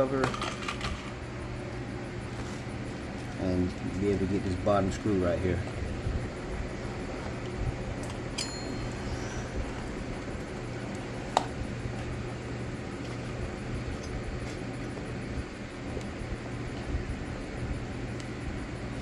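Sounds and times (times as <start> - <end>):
steady low hum: 0.0 - 19.0
metallic clink: 8.3 - 10.1.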